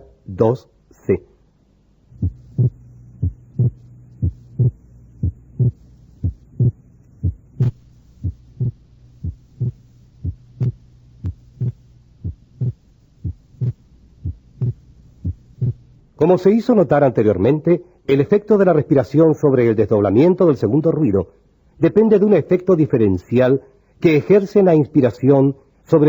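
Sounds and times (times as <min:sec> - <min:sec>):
steady low hum: 0:00.0 - 0:26.0
heartbeat through stethoscope: 0:02.1 - 0:15.8.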